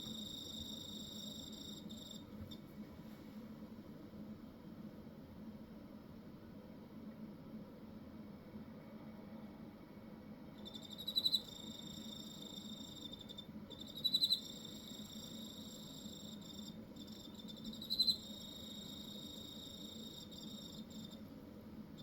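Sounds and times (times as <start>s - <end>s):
loud pulsing cricket chirp: 0.0s - 2.4s, 10.5s - 22.0s
cricket trilling: 0.0s - 2.6s, 10.6s - 21.3s.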